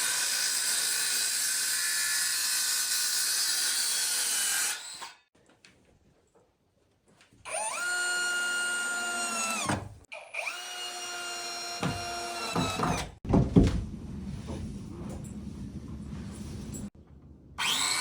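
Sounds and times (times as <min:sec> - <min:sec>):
power drill whining: 0:07.5 - 0:13.2, 0:17.6 - 0:18.0
knocks: 0:12.6 - 0:13.9.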